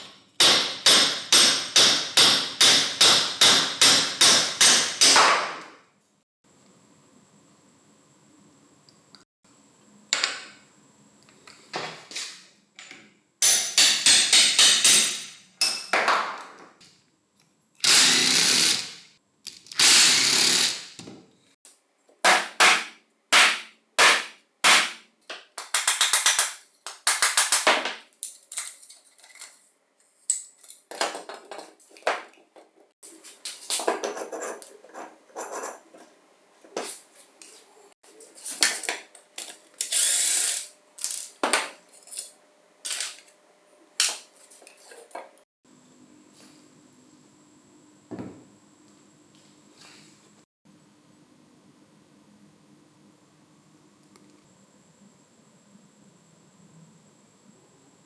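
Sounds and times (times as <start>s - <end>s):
metal parts scraping and clattering: 28.3s - 32.0s.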